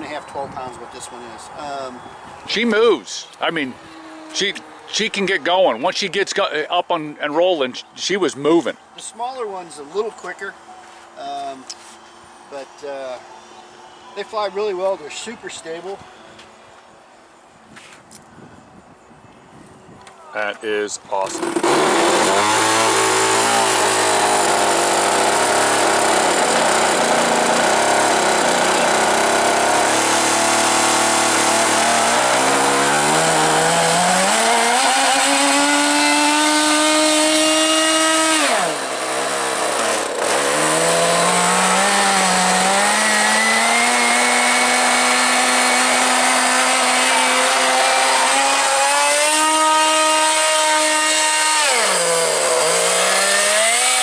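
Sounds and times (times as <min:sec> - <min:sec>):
model jet engine at high power: 0:21.2 - 0:54.0.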